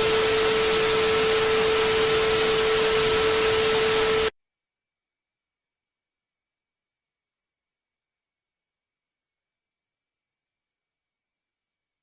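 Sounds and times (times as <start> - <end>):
loud static hiss: 0.0 - 4.3
steady mid-pitched tone: 0.0 - 4.3.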